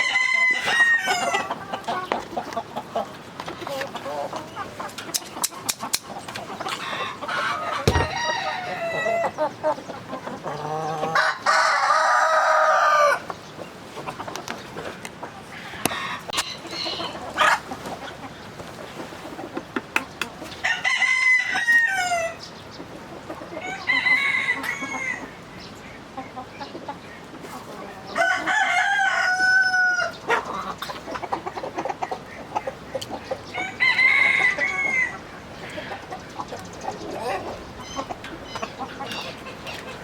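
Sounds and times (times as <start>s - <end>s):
roosters crowing: 0.0s - 2.0s, 6.6s - 9.7s, 10.4s - 13.3s, 15.5s - 17.6s, 20.6s - 22.4s, 23.5s - 25.4s, 27.9s - 30.8s, 33.5s - 36.0s
chickens clucking: 0.0s - 40.0s.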